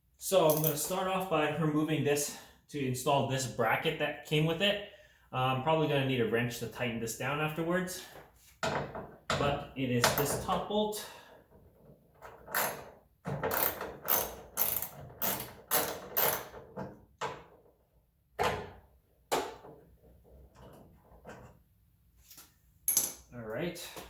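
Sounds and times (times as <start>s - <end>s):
socket ratchet clicking: 13.5s - 16.5s.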